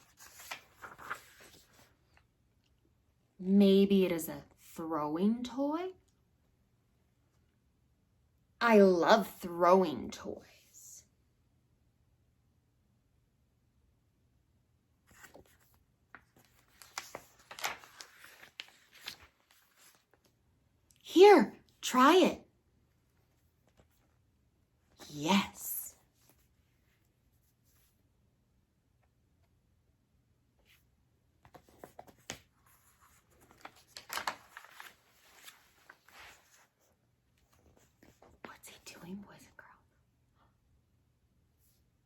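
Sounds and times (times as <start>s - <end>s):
paper pages rustling and turning: 0.0s - 2.3s, 15.0s - 20.4s, 30.6s - 38.8s.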